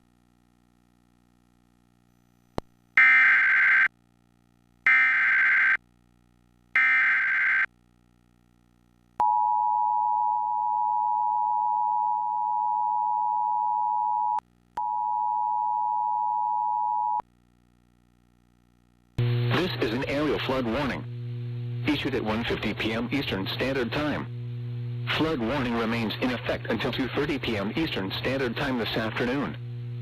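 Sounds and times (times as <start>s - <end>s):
screechy digital data bursts: 3.0s - 3.9s, 6.8s - 7.7s.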